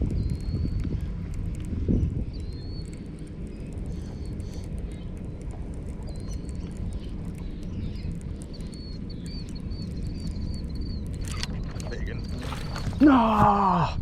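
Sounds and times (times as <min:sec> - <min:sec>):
steady low rumble: 0:00.0 - 0:14.0
bird chirping: 0:06.1 - 0:13.0.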